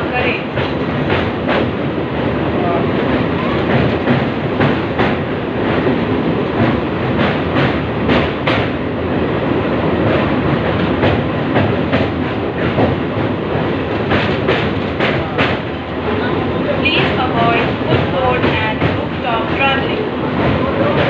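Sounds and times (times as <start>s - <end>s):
train rumbling on rails: 0.0s - 21.0s
wheels clacking over rail joints: 0.0s - 21.0s.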